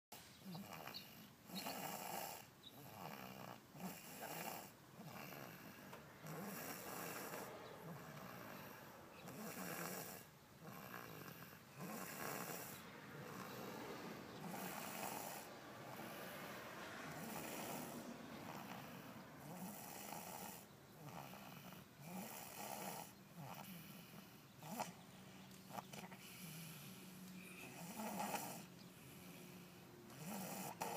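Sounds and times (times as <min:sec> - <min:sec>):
person snoring: 0:01.6 - 0:24.0, 0:27.6 - 0:28.7, 0:30.1 - 0:30.9.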